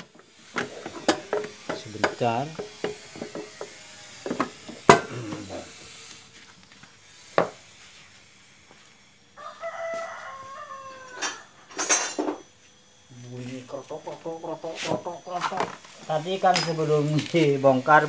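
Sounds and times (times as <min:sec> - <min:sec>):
rooster crowing: 0:09.3 - 0:12.4.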